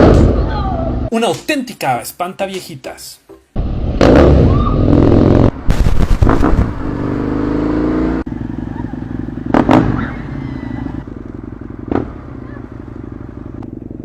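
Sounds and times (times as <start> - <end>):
motorcycle engine revving: 3.6 - 14.0.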